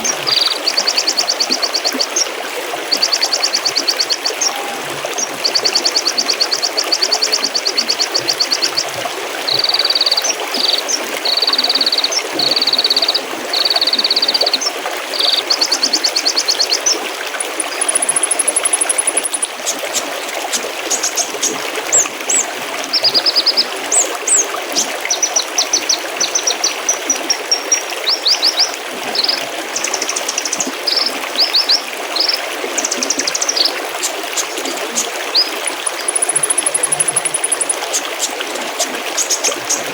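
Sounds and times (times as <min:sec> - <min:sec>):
songbirds singing: 0:00.0 - 0:19.8, 0:35.3 - 0:38.0
stream trickling and splashing: 0:00.0 - 0:39.9.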